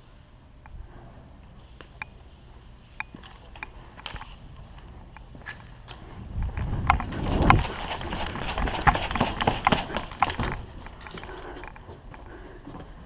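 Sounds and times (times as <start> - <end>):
running footsteps on ground: 6.6 - 12.8.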